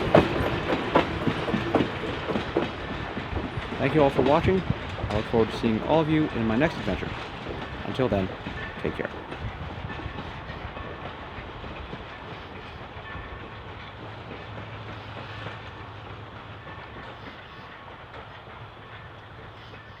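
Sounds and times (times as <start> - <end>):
train rumbling along track: 0.0 - 20.0.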